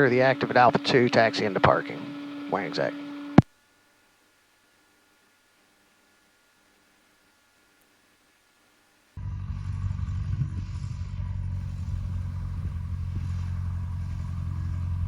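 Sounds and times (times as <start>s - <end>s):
airplane engine and propeller: 0.0s - 3.4s, 9.5s - 15.0s.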